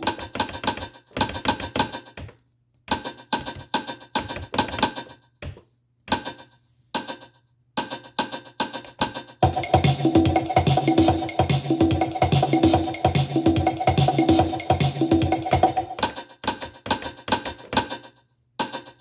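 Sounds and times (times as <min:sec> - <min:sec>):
drum machine clicky percussion: 0:00.0 - 0:02.2, 0:02.9 - 0:05.0, 0:07.8 - 0:18.0.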